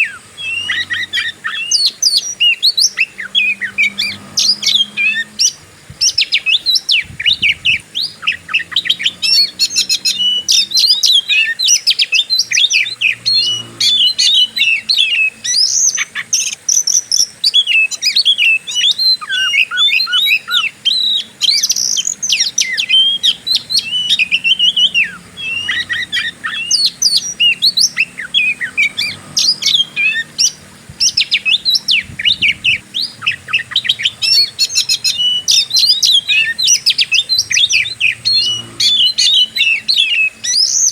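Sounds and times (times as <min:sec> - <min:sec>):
songbird singing: 0:00.0 - 0:40.9.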